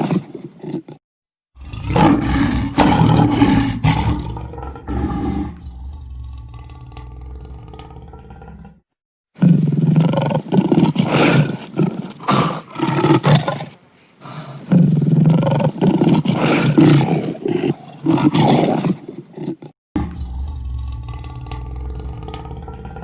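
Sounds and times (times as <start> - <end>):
lion roaring: 0.0 - 8.8, 14.7 - 23.0.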